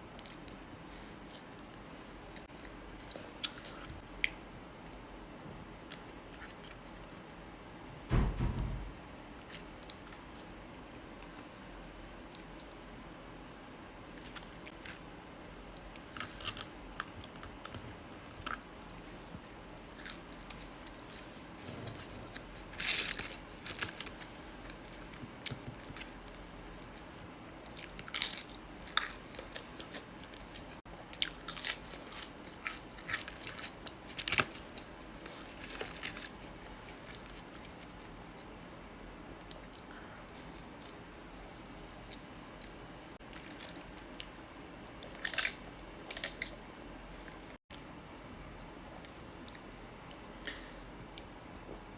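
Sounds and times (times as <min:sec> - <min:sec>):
person chewing food: 0:14.2 - 0:47.6.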